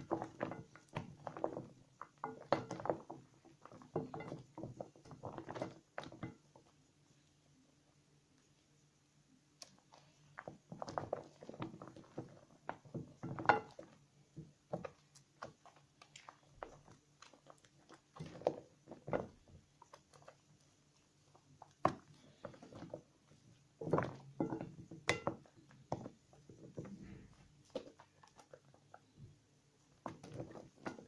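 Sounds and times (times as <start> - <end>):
hands rubbing wet soap: 13.8 - 24.8, 25.4 - 31.0.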